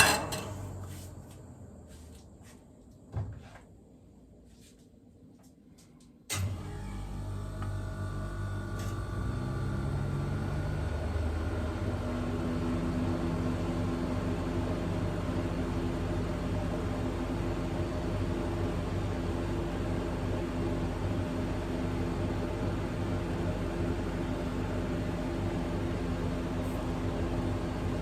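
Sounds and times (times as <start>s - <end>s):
electric motor hum: 6.4s - 12.5s.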